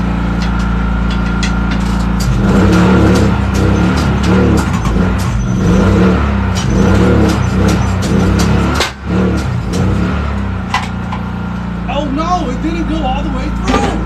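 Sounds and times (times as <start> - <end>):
tire changer machine drone: 0.0 - 14.0.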